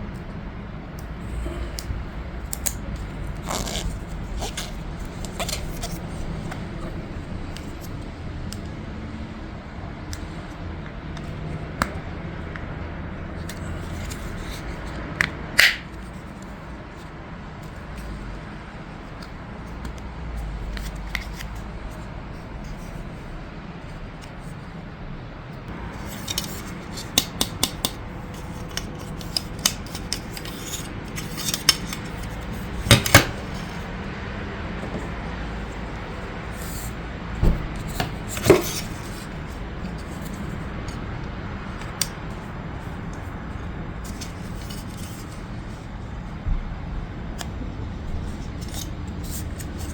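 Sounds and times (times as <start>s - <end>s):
plastic parts clicking and snapping: 15.2s - 16.1s.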